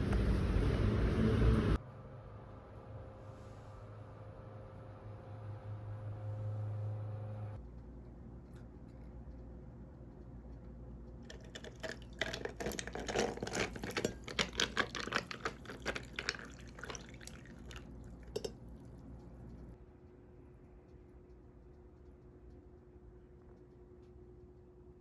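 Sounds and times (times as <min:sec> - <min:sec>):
liquid splashing and trickling: 0:11.3 - 0:19.7.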